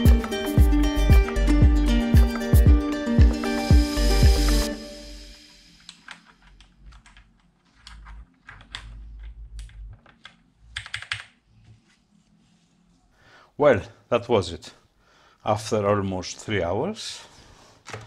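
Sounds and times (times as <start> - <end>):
music: 0.0 - 6.4
mechanical keyboard keystrokes: 5.9 - 11.4.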